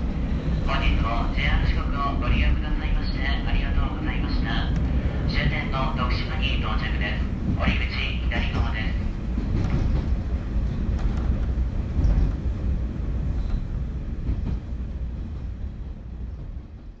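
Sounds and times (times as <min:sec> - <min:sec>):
train low rumble: 0:00.0 - 0:17.0.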